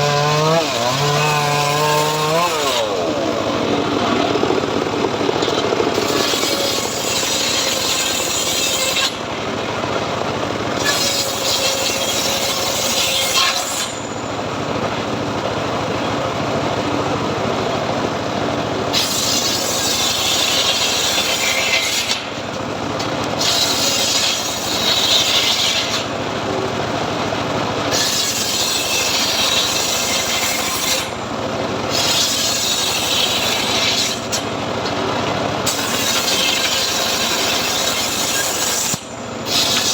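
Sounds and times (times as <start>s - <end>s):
saw blade rasping through wood: 0.0s - 4.3s, 5.3s - 9.2s, 10.8s - 14.1s, 18.9s - 22.4s, 23.4s - 26.1s, 27.9s - 31.2s, 31.9s - 34.5s, 35.6s - 39.9s
sawmill machine hum: 0.0s - 39.9s.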